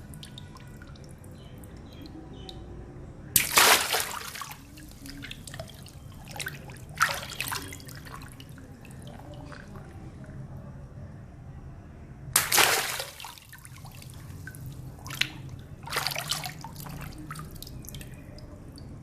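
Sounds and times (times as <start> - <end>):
water splashing: 0.0 - 2.6, 3.4 - 10.3, 12.4 - 19.0
water dripping and trickling: 0.0 - 2.8, 3.4 - 10.4, 12.4 - 19.0
water balloons bursting: 3.4 - 8.3, 12.4 - 17.6.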